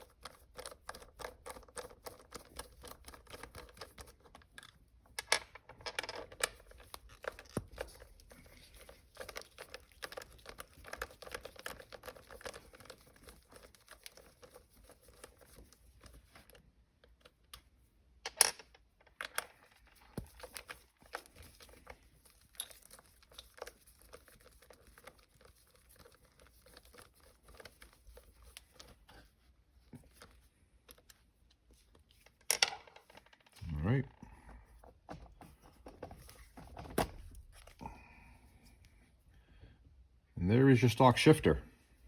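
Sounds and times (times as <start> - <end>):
small clicks and rattles: 0.0 - 33.8.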